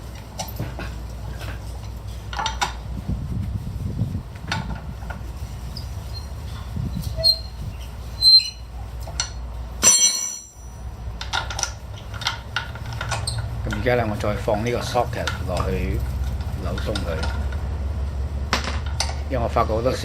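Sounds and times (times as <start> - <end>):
steady low rumble: 0.0 - 20.0
lug wrench squeaks and clicks: 5.7 - 13.9
sharp metallic squeal: 5.8 - 8.7, 9.8 - 10.8.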